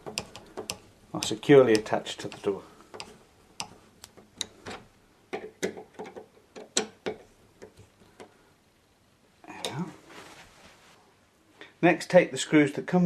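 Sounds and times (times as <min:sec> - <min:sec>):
sharp metal clicks: 0:00.0 - 0:04.8.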